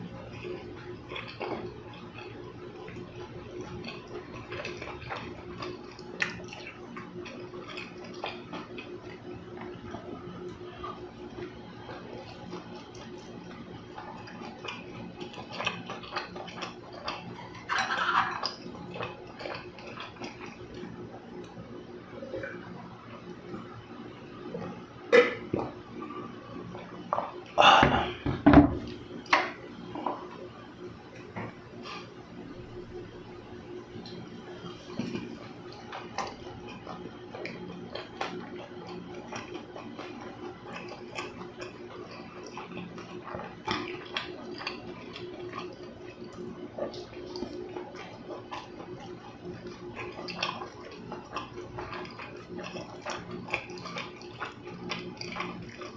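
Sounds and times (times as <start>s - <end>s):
faint steady hum: 0.0s - 55.9s
close chewing with wet smacks: 0.1s - 27.6s, 33.9s - 55.9s
mouth eating sounds: 24.6s - 25.8s.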